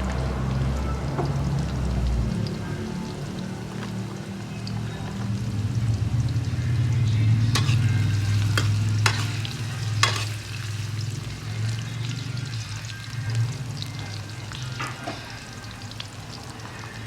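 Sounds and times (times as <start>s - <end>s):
crab sizzling in a pan: 0.2s - 17.0s
utensil knocking against pan: 7.6s - 9.4s, 10.0s - 10.3s.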